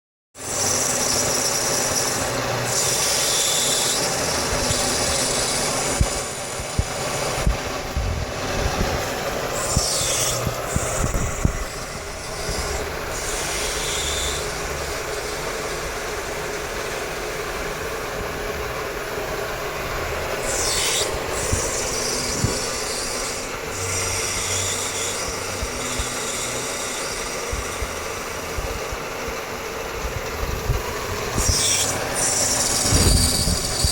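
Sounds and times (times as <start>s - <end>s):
tool scraping metal: 0.4s - 17.9s, 19.6s - 29.0s, 30.3s - 33.9s
milling machine hum: 0.4s - 33.9s.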